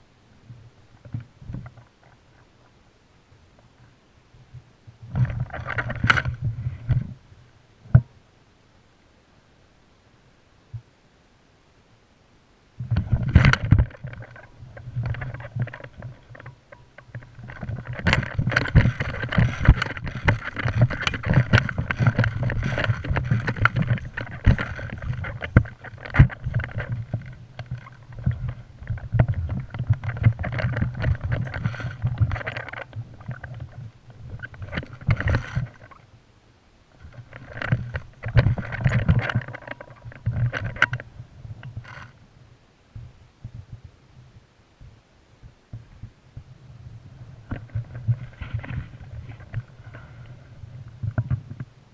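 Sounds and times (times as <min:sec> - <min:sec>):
camera handling rumble: 0:05.1 - 0:07.2, 0:12.8 - 0:36.0, 0:37.0 - 0:42.2, 0:47.0 - 0:51.7.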